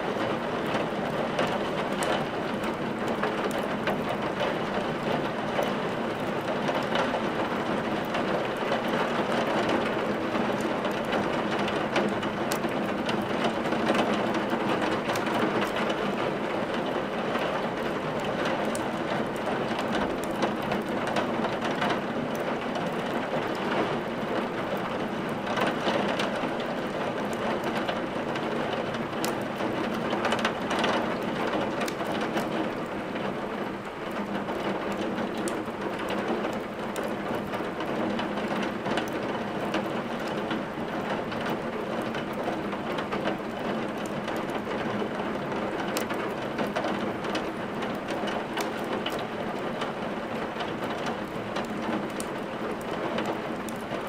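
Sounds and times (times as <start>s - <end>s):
steady rain: 0.0s - 54.0s
firewood crackling: 45.9s - 49.6s, 50.2s - 54.0s.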